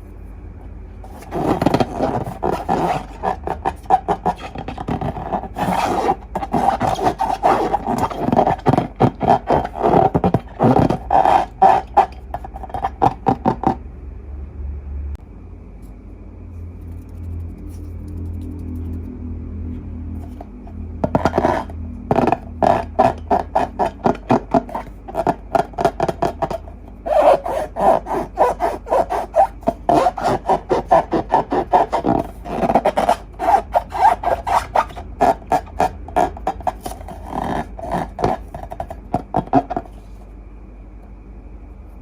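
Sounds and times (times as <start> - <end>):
quick scraping strokes: 1.1 - 13.4, 20.2 - 40.2.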